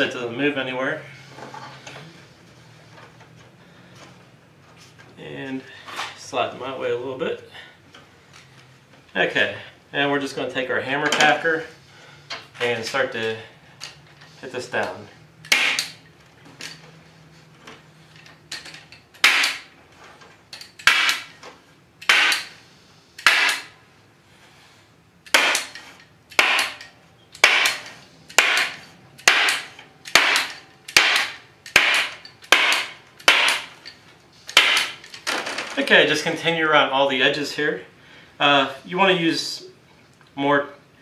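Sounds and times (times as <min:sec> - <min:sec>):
hammer tacker smacks: 0:15.5 - 0:16.0, 0:19.2 - 0:19.7, 0:20.8 - 0:21.3, 0:23.2 - 0:23.7, 0:26.4 - 0:26.8, 0:27.4 - 0:33.8, 0:34.5 - 0:35.0.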